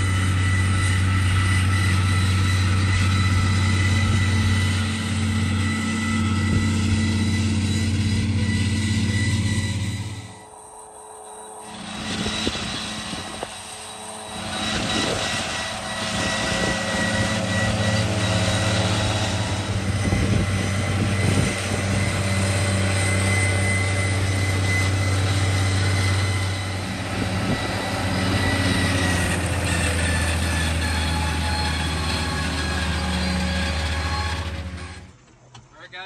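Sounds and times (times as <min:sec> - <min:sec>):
thin high whine: 0:00.0 - 0:36.0
tractor engine running: 0:00.0 - 0:36.0.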